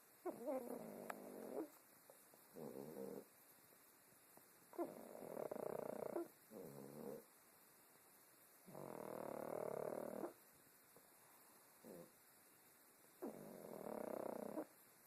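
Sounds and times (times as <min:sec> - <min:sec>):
dog snoring: 0:00.3 - 0:01.8, 0:02.5 - 0:03.3, 0:04.7 - 0:07.3, 0:08.6 - 0:10.4, 0:11.8 - 0:12.1, 0:13.2 - 0:14.7.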